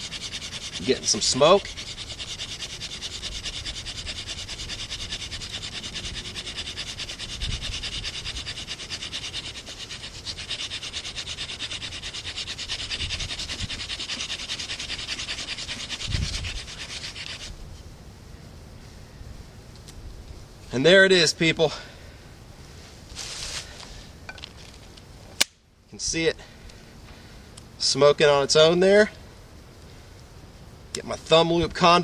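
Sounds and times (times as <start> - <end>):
hand drill rasping on wood: 0.0 - 17.5.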